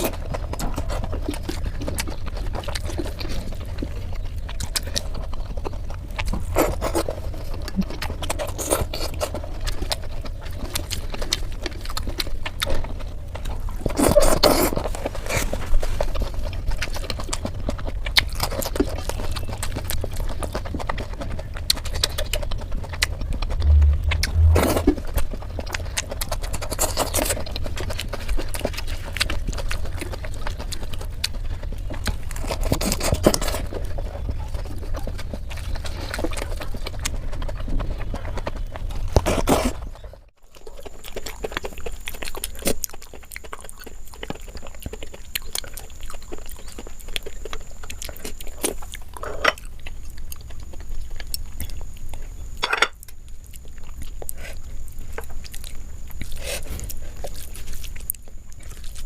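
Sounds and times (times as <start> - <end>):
chewing and lip smacks: 0.0 - 59.0
crunchy bites: 0.0 - 59.0
steady low hum: 22.6 - 26.8.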